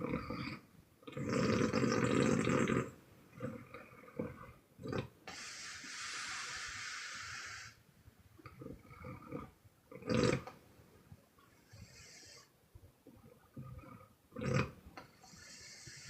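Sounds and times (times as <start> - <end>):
hissing breath out: 5.3 - 7.8.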